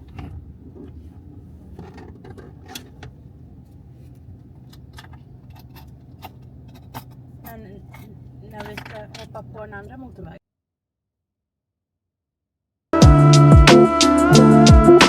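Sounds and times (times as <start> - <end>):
light clicks and rattles: 0.0 - 10.3
engine and road rumble: 0.0 - 10.4.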